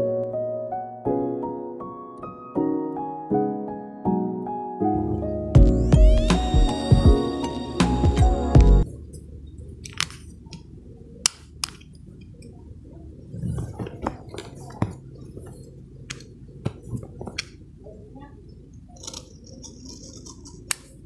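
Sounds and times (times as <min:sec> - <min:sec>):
background music: 0:00.0 - 0:08.9
low background hum: 0:08.3 - 0:21.0.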